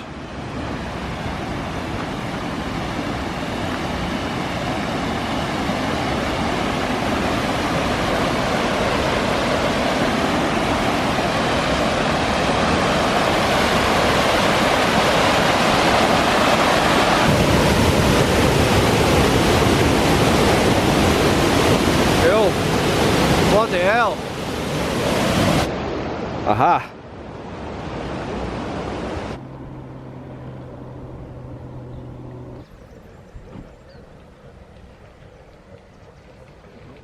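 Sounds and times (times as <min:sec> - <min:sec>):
waterfall roaring: 0:00.0 - 0:26.9.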